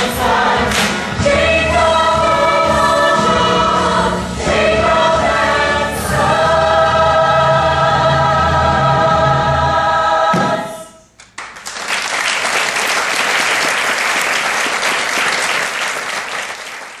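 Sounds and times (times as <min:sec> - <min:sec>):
choir singing: 0:00.0 - 0:11.0
audience applause: 0:11.4 - 0:17.0.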